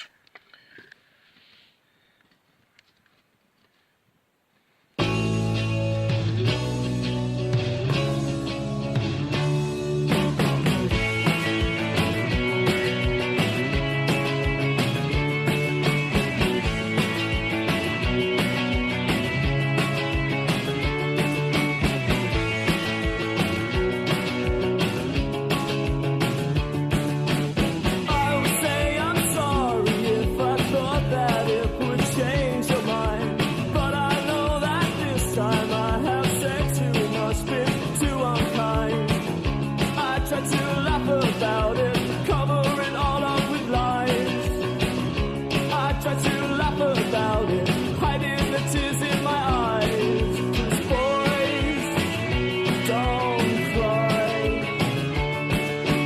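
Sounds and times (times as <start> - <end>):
rock song: 5.0 - 56.0
drum beat: 10.1 - 56.0
person singing: 28.0 - 56.0.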